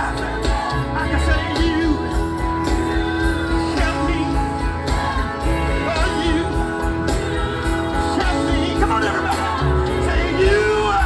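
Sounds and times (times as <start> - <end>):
band playing: 0.0 - 11.0
bass: 0.0 - 11.0
choir singing gospel: 0.0 - 11.0
steady drumbeat: 0.0 - 11.0.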